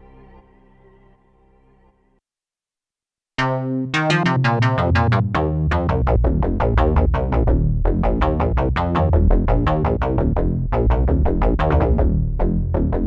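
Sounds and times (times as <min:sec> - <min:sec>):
heavy synth bass: 0:03.4 - 0:13.0
synthesizer plucked notes: 0:03.4 - 0:13.0.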